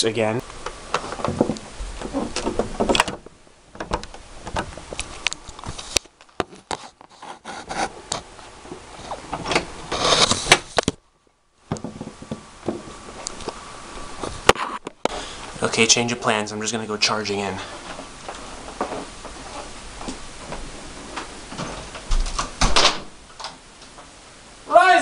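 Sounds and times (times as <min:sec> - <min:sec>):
handling noises rubbing and clicking: 0:03.8 - 0:11.0.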